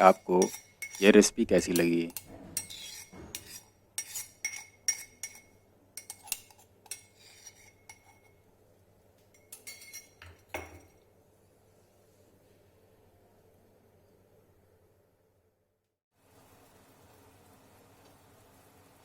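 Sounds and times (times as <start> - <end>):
metal utensils clinking: 0.0 - 8.3, 9.3 - 11.0.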